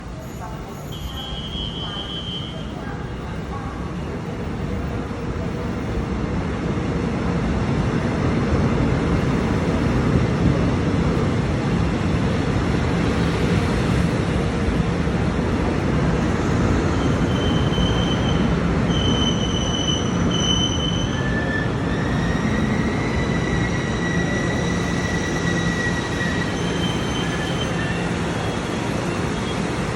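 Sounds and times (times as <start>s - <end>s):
train wheels rumbling on rails: 0.0s - 29.9s
high-pitched brake squealing: 0.1s - 2.8s, 16.9s - 29.8s.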